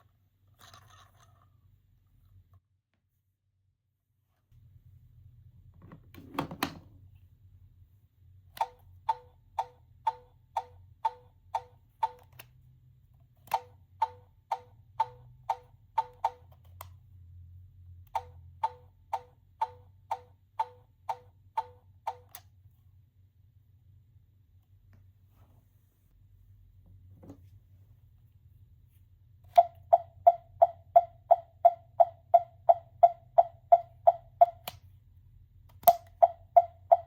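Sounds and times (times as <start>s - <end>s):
toy electronic ticks: 8.6s - 12.5s, 13.4s - 16.9s, 18.1s - 22.5s, 29.5s - 34.8s, 35.7s - 37.0s.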